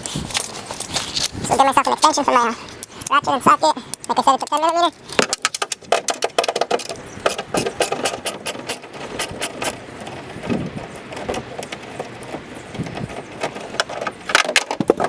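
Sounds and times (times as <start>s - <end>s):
hand ratchet clicking: 3.9s - 15.0s.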